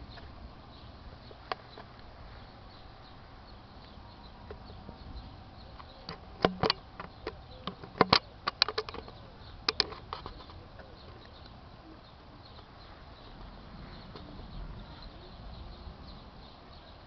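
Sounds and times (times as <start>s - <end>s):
sharp irregular taps and clicks: 5.8s - 10.4s.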